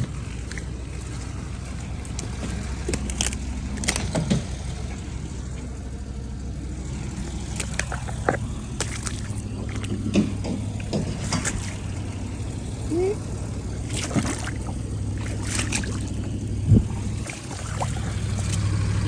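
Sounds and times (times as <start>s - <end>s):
boat motor humming: 0.0s - 19.0s.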